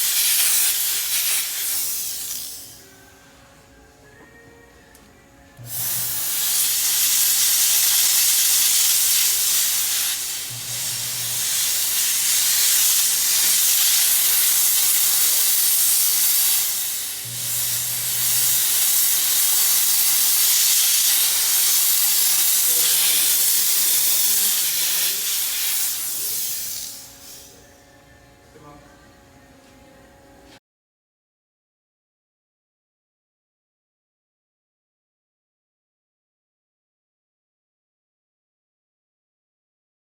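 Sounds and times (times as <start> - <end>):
steam cleaner hissing: 0.0 - 2.9, 5.7 - 27.7.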